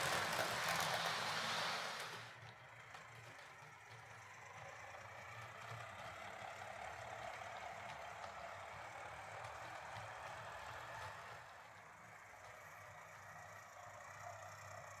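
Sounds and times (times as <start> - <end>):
model train motor whirring: 0.0 - 2.4
model train wheels rumbling: 0.0 - 13.4.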